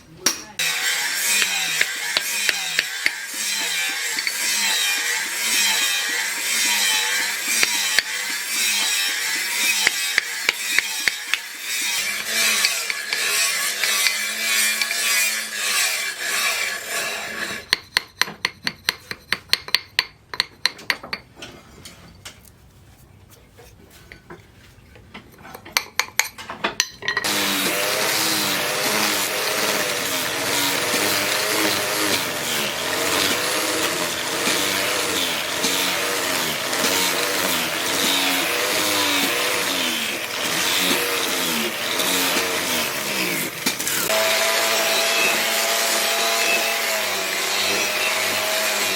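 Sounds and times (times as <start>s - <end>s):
metal scraping: 0.6s - 19.6s
power tool motor running: 27.2s - 48.9s.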